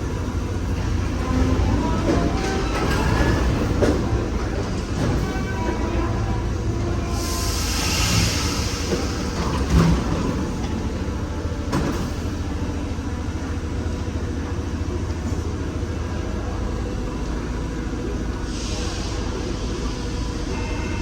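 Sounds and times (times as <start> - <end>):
train low hum: 0.0 - 21.0
air hiss: 7.0 - 9.7.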